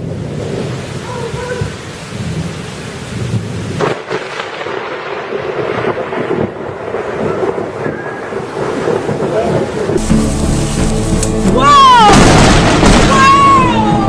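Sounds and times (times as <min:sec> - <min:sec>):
heavy rain: 0:00.0 - 0:14.0
wind: 0:00.0 - 0:14.0
sharp thunder crack: 0:03.2 - 0:14.0.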